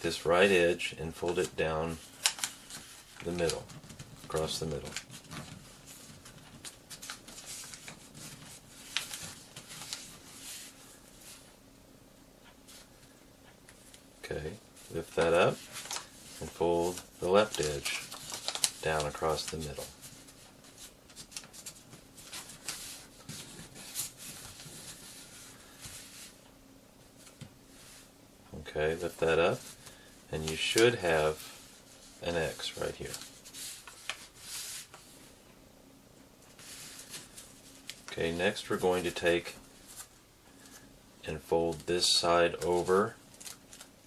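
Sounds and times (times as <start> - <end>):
paper being folded and creased: 1.1 - 11.4, 14.8 - 26.3, 29.0 - 35.1, 36.5 - 39.2, 41.4 - 44.0.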